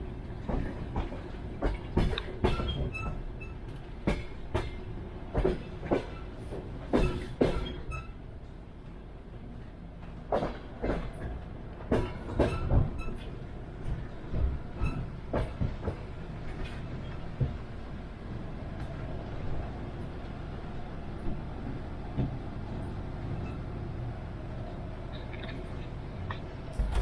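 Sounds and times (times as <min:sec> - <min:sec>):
train wheels clattering over rails: 0:00.4 - 0:08.0, 0:10.0 - 0:17.7, 0:26.3 - 0:27.0.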